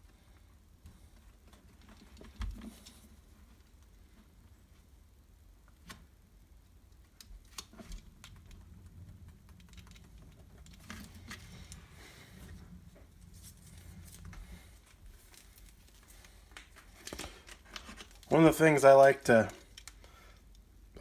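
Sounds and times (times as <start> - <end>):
faint clicks and taps: 6.7 - 13.2
soft scratching: 7.7 - 18.4.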